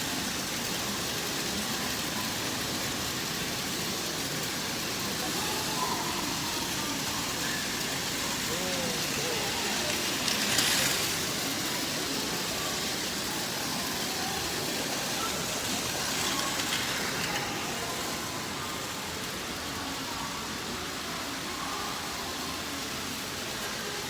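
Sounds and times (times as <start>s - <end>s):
toy trains running on plastic track: 0.0s - 24.0s.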